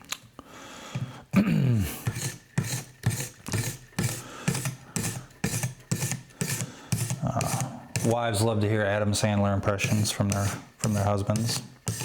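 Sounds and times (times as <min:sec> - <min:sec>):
sharpening stone scraping knife edge: 0:02.0 - 0:08.2.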